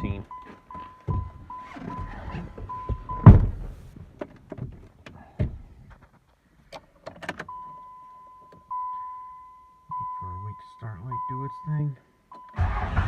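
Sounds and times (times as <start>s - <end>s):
dashboard warning chime: 0.0s - 3.4s, 7.5s - 12.6s
thud: 1.1s - 3.9s
truck hood slamming shut: 3.2s - 3.8s.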